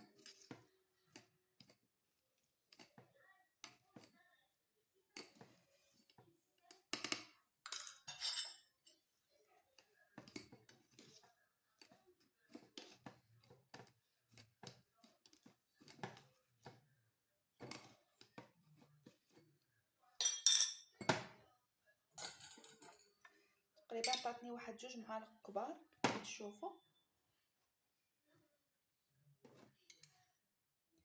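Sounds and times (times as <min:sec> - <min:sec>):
utensils clinking and scraping: 0:07.0 - 0:09.0, 0:22.2 - 0:23.4.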